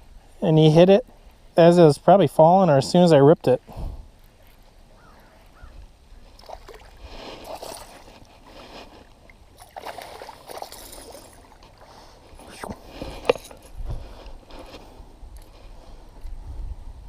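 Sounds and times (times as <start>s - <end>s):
water splashing and sloshing: 4.0s - 16.3s.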